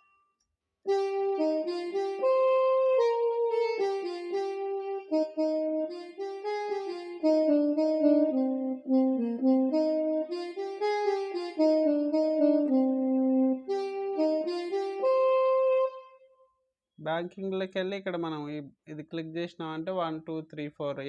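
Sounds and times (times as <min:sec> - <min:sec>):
keyboard playing slow melody: 0:00.9 - 0:16.2.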